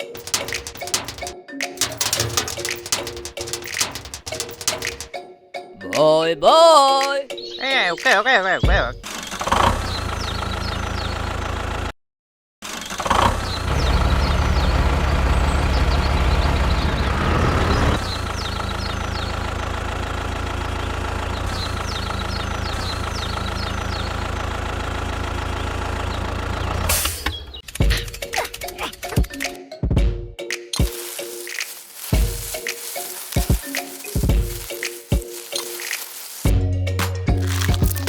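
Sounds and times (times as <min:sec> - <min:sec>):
engine idling: 0:13.7 - 0:26.9.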